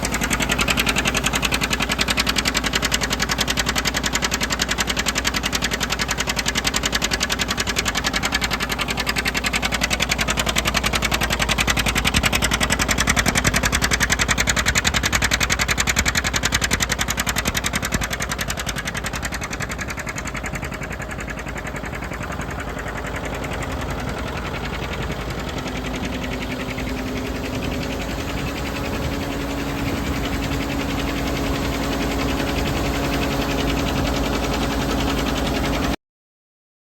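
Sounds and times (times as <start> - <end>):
tractor diesel engine running: 0.0 - 36.0
steady hum: 24.4 - 34.2.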